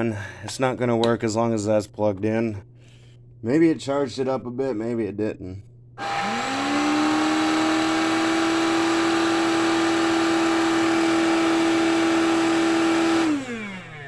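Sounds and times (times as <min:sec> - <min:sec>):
floor cleaner motor whining: 0:06.0 - 0:14.0.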